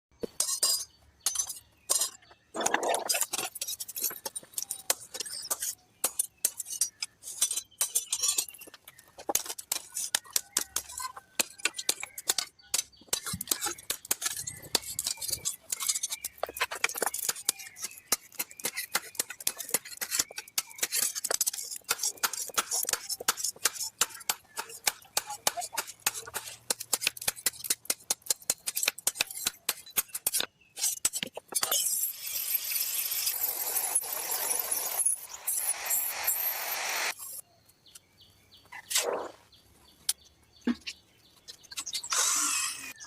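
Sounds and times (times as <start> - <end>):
metallic clinks and taps on steel: 0.2 - 2.4.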